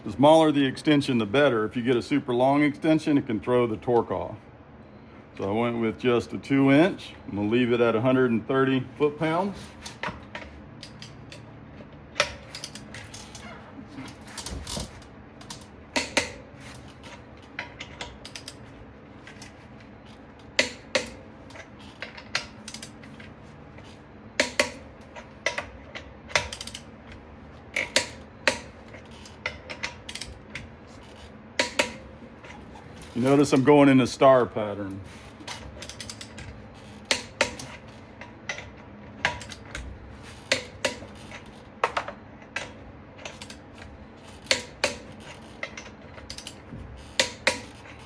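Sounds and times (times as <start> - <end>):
torque wrench ratcheting clicks: 22.4 - 23.0.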